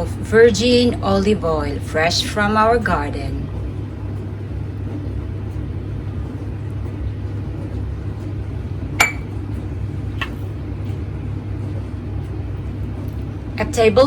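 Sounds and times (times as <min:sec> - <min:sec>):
steady low hum: 0:00.0 - 0:14.0
glass clinks: 0:09.0 - 0:09.2.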